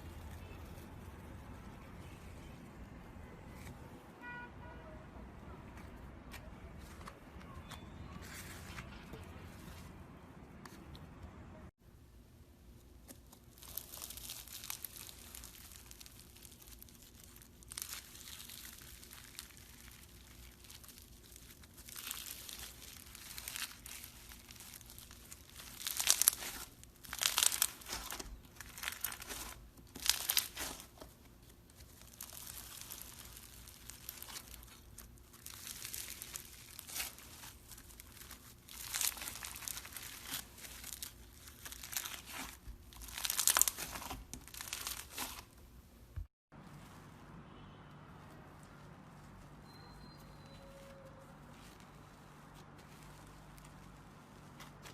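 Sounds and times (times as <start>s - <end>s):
slime squeezed crackling: 13.0s - 45.6s.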